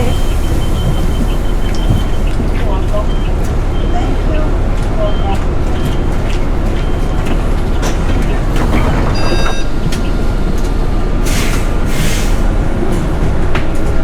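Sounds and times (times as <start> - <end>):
bus engine and road rumble: 0.0 - 14.0
short electronic beep: 9.1 - 9.8.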